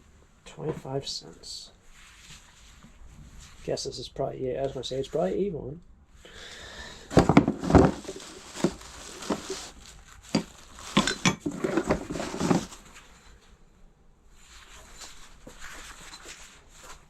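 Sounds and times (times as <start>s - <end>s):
light rustling: 7.0s - 13.4s
hard objects clinking and knocking: 7.1s - 12.8s.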